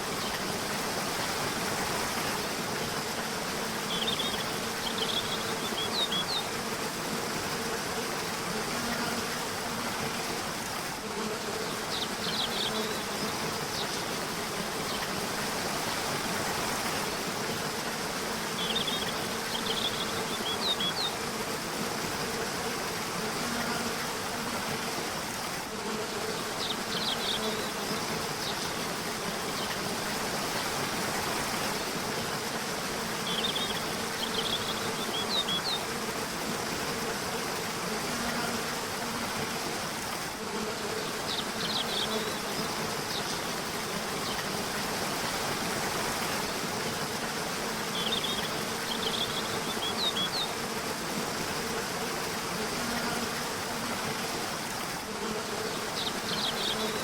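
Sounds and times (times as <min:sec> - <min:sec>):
birds chirping: 0:03.8 - 0:06.6, 0:11.5 - 0:14.1, 0:18.5 - 0:21.2, 0:26.2 - 0:28.8, 0:33.2 - 0:35.9, 0:47.9 - 0:50.6, 0:55.8 - 0:57.0
river rushing: 0:24.0 - 0:57.0.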